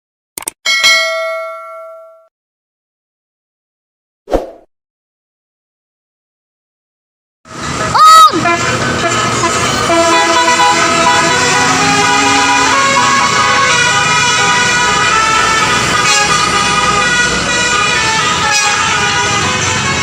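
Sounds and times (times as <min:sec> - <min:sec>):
bus engine running: 0:07.5 - 0:20.0
multi-tone bus air horn tune: 0:07.5 - 0:20.0.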